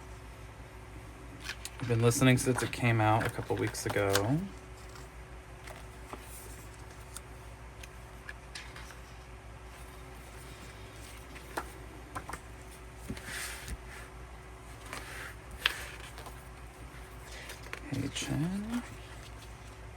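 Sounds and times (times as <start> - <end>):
faint steady hum: 0.0 - 19.9
cards being handled clicking: 1.4 - 9.1, 11.0 - 12.5, 15.6 - 19.8
soft paper rustle: 1.4 - 19.9.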